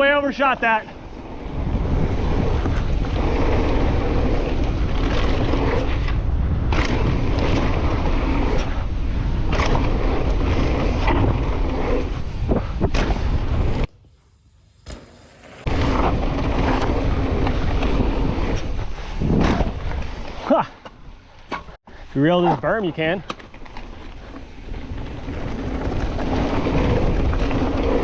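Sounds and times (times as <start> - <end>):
bike tyres rolling on dirt: 0.0 - 28.0
wind buffeting microphone: 0.9 - 13.9.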